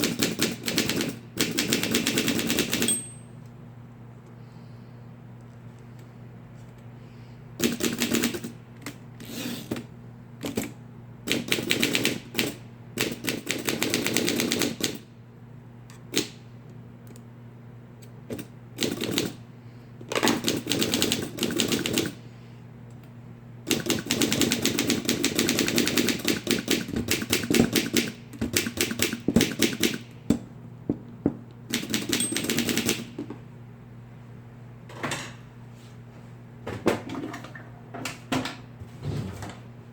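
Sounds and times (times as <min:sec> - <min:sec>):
steady low hum: 0:02.8 - 0:09.2, 0:22.1 - 0:39.9.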